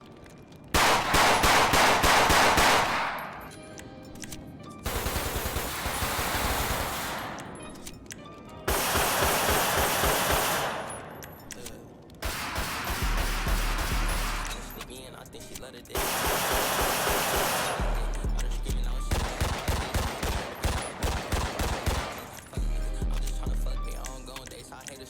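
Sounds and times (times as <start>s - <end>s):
automatic gunfire bursts: 0.8s - 3.5s, 4.8s - 7.6s, 8.7s - 11.3s, 12.2s - 15.0s, 15.6s - 18.1s, 19.1s - 22.6s.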